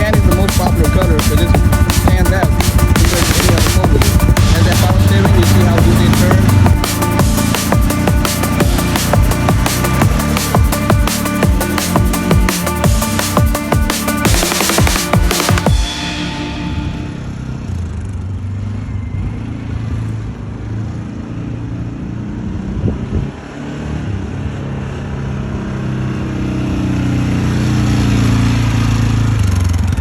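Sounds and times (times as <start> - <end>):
utility vehicle engine running: 0.0 - 18.3.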